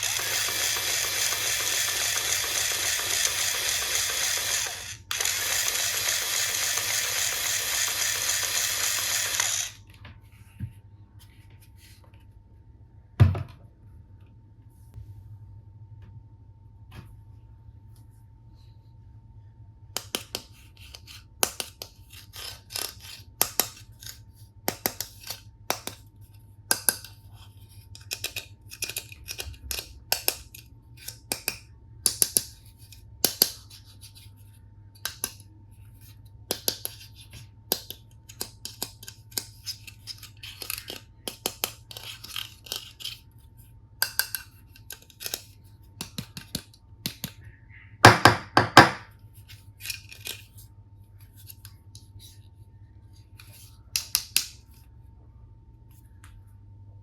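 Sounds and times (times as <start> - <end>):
plastic toys clicking and tapping: 0.0 - 9.8, 24.7 - 26.0, 26.7 - 27.1, 28.0 - 32.6, 33.2 - 33.7, 35.0 - 35.4, 36.5 - 37.0, 37.7 - 43.1, 44.0 - 47.4
faint steady hum: 0.0 - 57.0.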